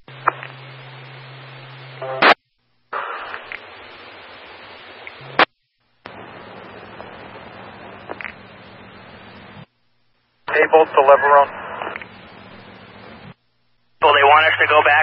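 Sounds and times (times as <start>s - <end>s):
low steady hum: 0.0s - 15.0s
radio scanner hiss: 0.0s - 15.0s
radio squelch burst: 2.0s - 4.0s, 10.5s - 13.4s, 14.0s - 15.0s.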